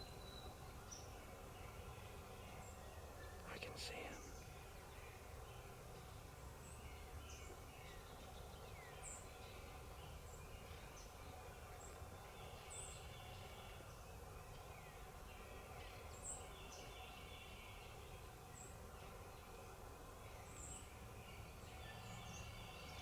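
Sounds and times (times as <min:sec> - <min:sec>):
songbird chirps: 0:00.0 - 0:23.0.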